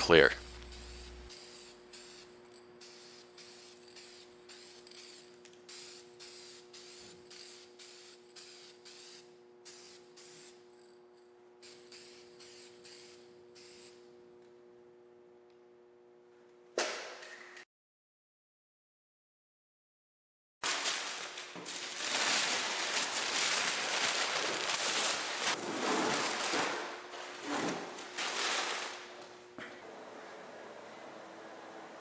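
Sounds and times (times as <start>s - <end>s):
spray can hissing bursts: 0.4s - 10.6s, 11.6s - 14.0s.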